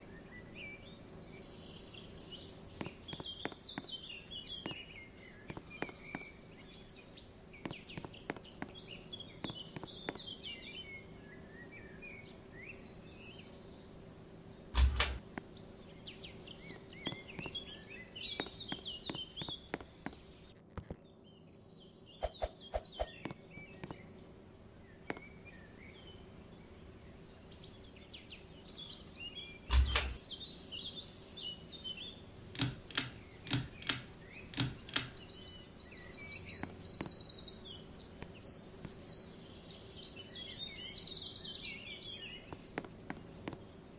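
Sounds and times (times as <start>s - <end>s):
birds chirping: 1.5s - 11.0s, 16.1s - 26.2s, 29.7s - 43.9s
scattered clicks: 14.8s - 15.2s, 29.7s - 30.2s, 32.5s - 35.2s.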